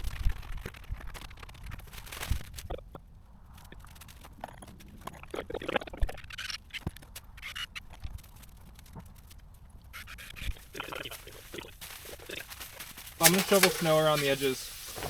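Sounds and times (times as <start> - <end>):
scraping and crunching on snow: 10.8 - 15.0.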